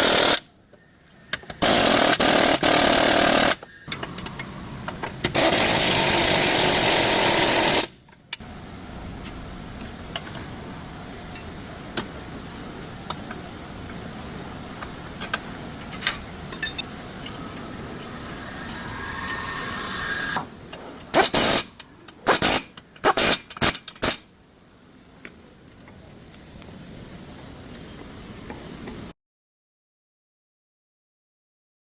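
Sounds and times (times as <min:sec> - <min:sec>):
power tool bursts: 0:00.0 - 0:00.4, 0:01.6 - 0:04.0, 0:05.3 - 0:07.9
steady workshop background noise: 0:00.0 - 0:24.5.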